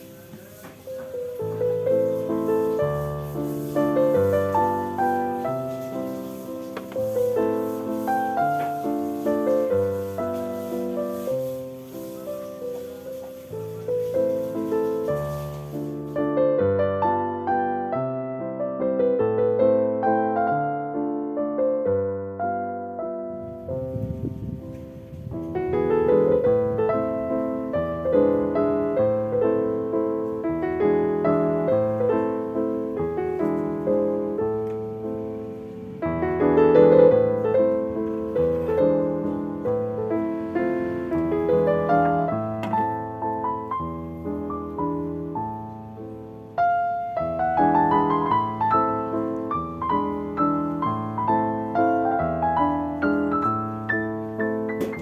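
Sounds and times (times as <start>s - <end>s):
gentle piano music: 0.0s - 55.0s.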